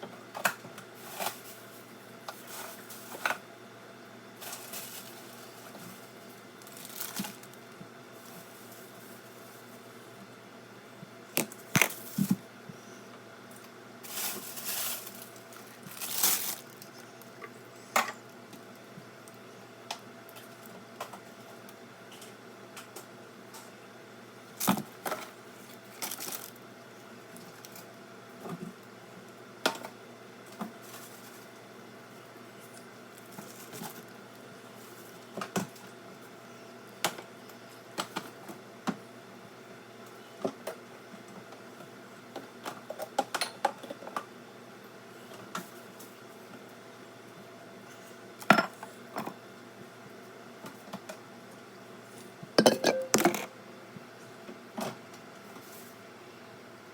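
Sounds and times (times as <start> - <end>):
plastic packaging rustling: 1.0 - 3.4, 4.4 - 7.6, 8.2 - 9.8, 11.4 - 12.4, 14.0 - 17.1, 25.8 - 26.6, 33.1 - 34.2
jars and bottles knocking: 52.6 - 53.5.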